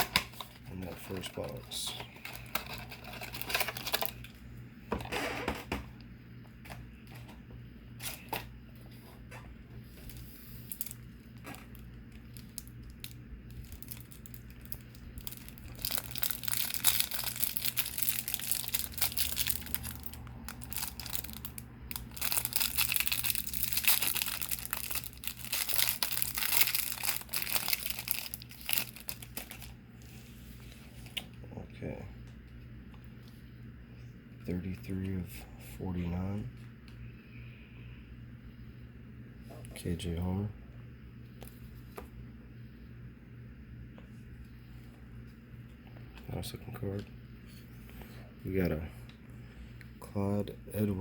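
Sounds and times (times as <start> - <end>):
plastic shrink wrap crinkling: 0.0 - 4.4, 10.0 - 29.8.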